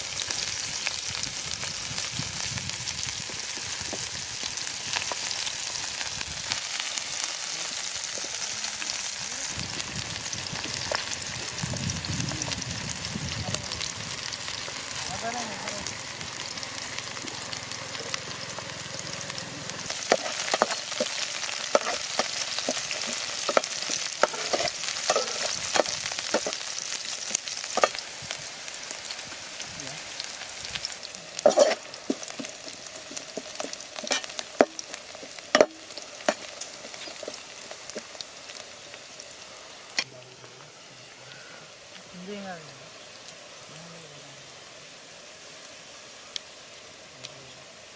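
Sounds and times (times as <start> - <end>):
chicken sizzling in hot oil: 0.0 - 43.8, 44.4 - 47.9
utensil scraping a pan: 19.9 - 26.6, 31.4 - 37.7.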